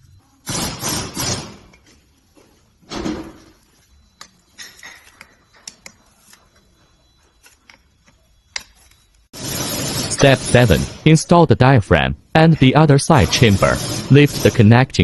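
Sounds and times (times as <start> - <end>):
metal parts scraping and clattering: 3.1 - 6.6.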